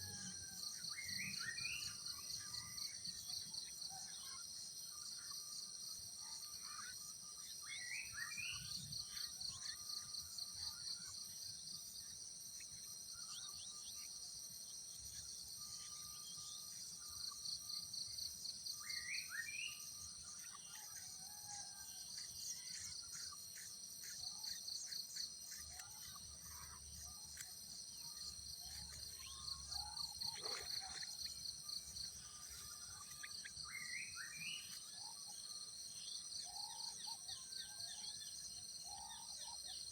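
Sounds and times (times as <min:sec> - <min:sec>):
pulsing insect trill: 0:00.0 - 0:39.9
bird chirps: 0:15.0 - 0:39.9.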